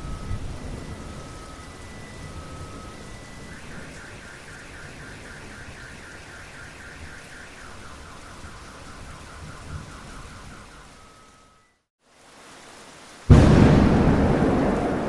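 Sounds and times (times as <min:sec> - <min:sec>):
car alarm warbling siren: 0:00.0 - 0:11.8
steady rain: 0:00.0 - 0:15.0.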